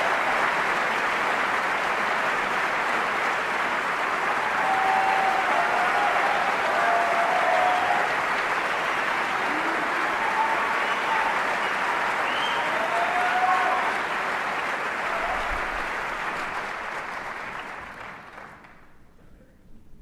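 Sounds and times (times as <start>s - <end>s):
audience applauding: 0.0s - 19.1s
whistles and cheers: 4.3s - 14.1s, 15.0s - 15.9s.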